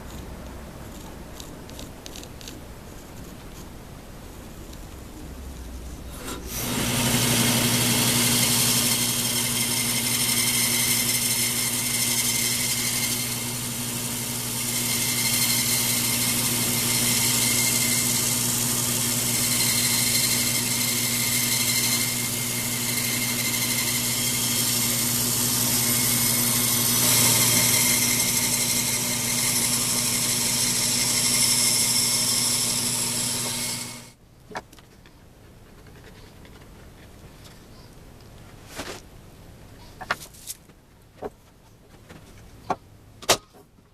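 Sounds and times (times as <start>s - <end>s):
bandsaw motor hum: 6.1s - 34.2s
saw blade cutting wood: 6.2s - 34.2s.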